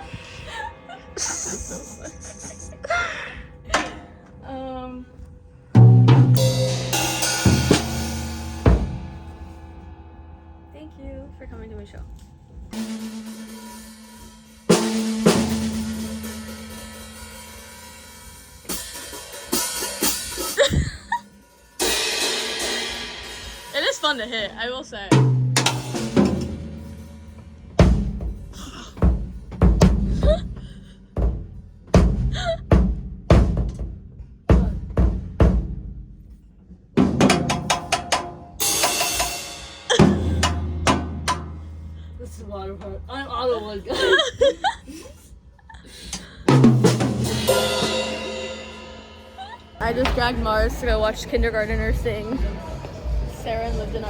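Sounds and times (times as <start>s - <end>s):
drum hits: 3.7s - 4.3s, 5.8s - 11.9s, 12.7s - 24.5s, 25.1s - 36.3s, 37.0s - 41.9s, 46.1s - 54.0s
cymbal crash: 5.8s - 10.7s, 12.7s - 20.7s, 21.4s - 24.1s, 37.2s - 42.0s, 46.2s - 49.8s.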